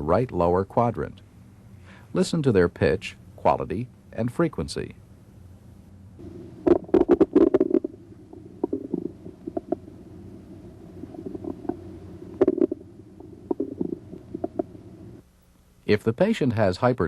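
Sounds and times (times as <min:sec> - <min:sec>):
steady low gurgling: 0:06.2 - 0:15.2
bowel gurgles and clicks: 0:06.6 - 0:09.9, 0:11.0 - 0:14.7.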